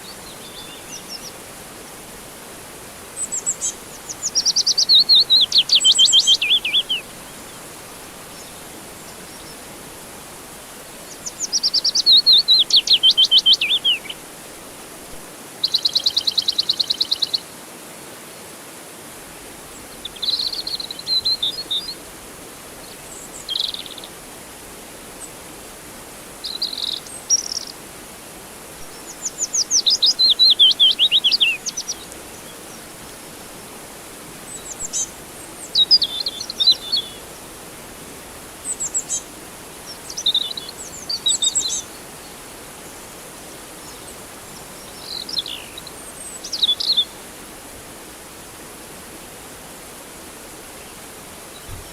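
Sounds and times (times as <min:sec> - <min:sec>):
faint steady hiss: 0:00.0 - 0:51.9
songbirds trilling: 0:03.1 - 0:09.7, 0:11.0 - 0:14.2, 0:28.8 - 0:37.5.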